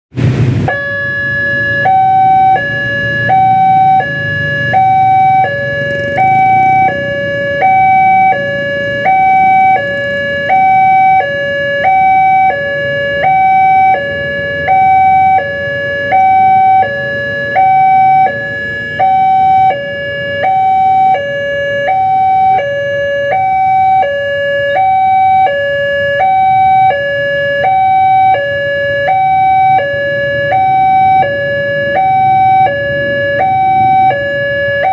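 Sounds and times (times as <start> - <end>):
two-tone emergency siren: 0.6 - 34.9.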